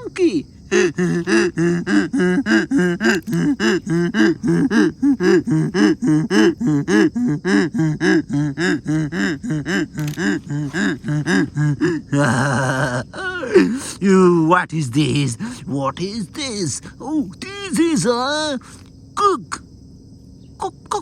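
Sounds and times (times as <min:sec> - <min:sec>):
donkey braying: 0:00.7 - 0:13.8.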